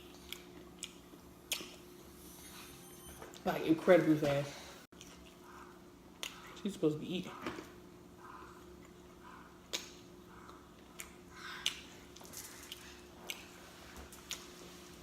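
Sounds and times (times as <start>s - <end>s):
person chewing food: 0.0s - 1.8s, 4.9s - 6.6s, 8.2s - 14.6s
mouth smacks or crunches: 0.3s - 1.8s, 9.6s - 10.1s.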